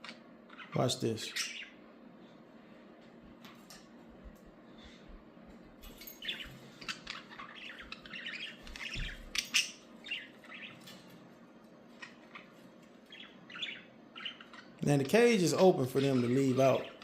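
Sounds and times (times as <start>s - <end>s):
pet birds chirping and squawking: 0.0s - 2.0s, 6.0s - 14.8s, 15.9s - 17.0s.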